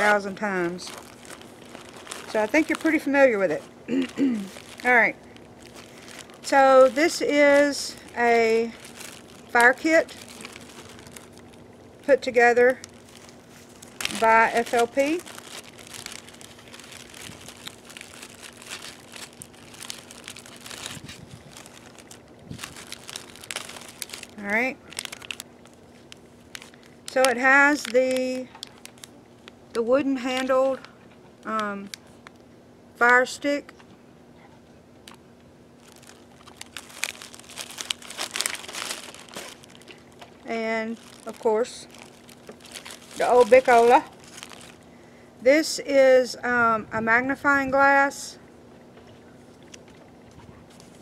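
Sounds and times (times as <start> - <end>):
pouch crinkling and rustling: 0.0 - 30.9, 35.8 - 44.9.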